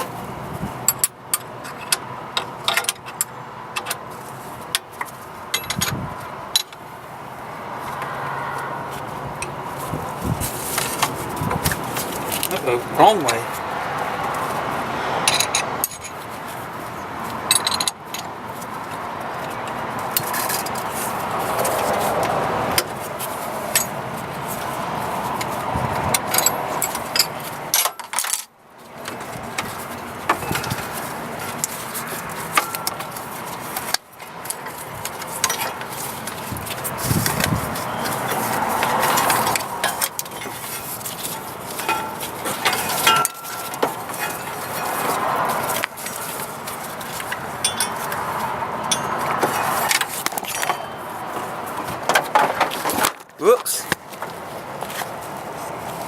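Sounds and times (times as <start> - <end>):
metal tools clinking on metal: 5.5 - 6.0, 15.2 - 16.2, 17.5 - 18.3, 26.2 - 28.5, 32.5 - 33.1, 41.7 - 46.5, 47.1 - 51.1.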